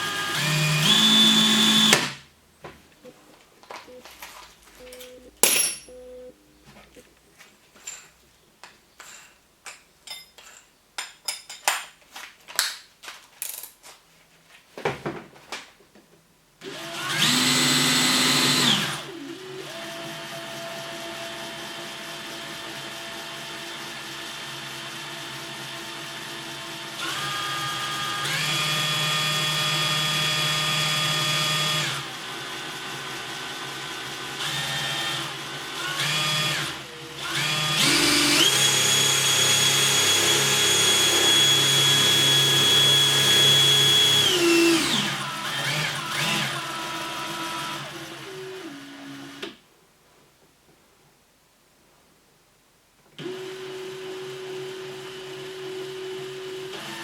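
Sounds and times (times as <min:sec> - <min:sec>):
cordless drill motor whining: 0:00.0 - 0:02.2, 0:16.6 - 0:49.6, 0:53.2 - 0:57.0.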